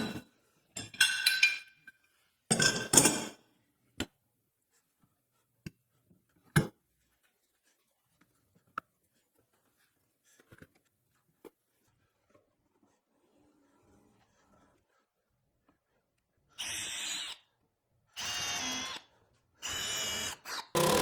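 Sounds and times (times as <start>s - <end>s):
metal clamps clinking: 0.8s - 1.8s.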